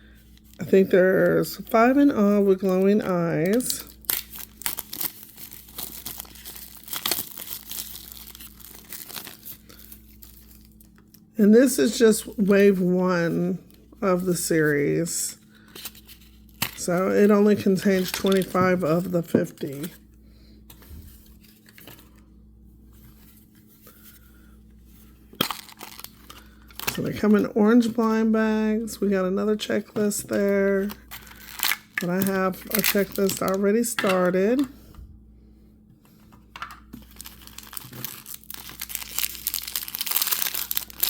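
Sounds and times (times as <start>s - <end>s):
steady low hum: 0.0s - 41.0s
plastic packaging crinkling: 0.2s - 14.8s, 15.4s - 20.1s, 25.1s - 28.3s, 29.6s - 34.7s, 36.6s - 41.0s.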